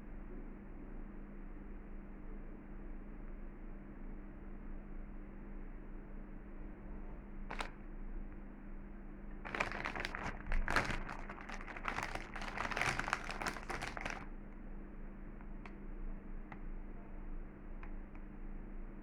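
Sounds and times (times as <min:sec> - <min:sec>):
faint steady hum: 0:00.0 - 0:19.0
chip bag crinkling: 0:07.5 - 0:07.7, 0:09.4 - 0:14.3.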